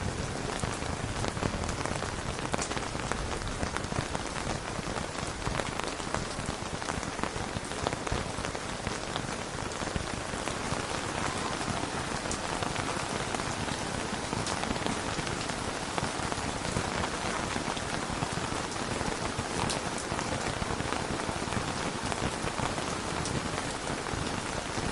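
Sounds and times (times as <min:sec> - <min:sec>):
rain pattering on tent: 0:00.0 - 0:24.9.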